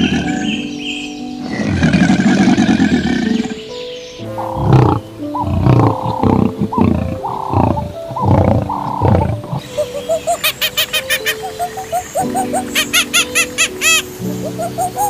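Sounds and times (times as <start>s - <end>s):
background music: 0.0s - 15.0s
animal roaring grunts: 1.4s - 3.6s, 4.3s - 9.6s.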